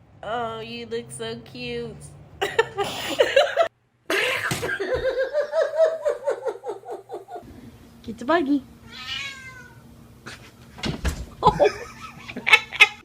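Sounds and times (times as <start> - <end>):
person laughing: 2.4 - 7.4, 11.4 - 13.0.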